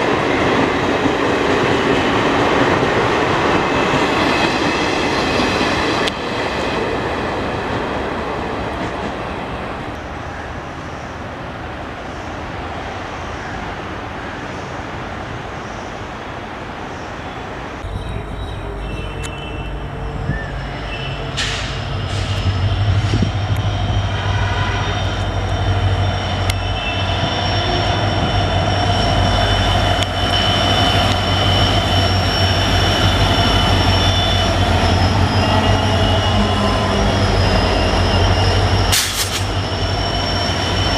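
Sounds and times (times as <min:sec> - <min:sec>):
train rolling on rails: 0:00.0 - 0:40.9
diesel locomotive hum: 0:17.5 - 0:40.9
high steady squealing: 0:17.9 - 0:40.9.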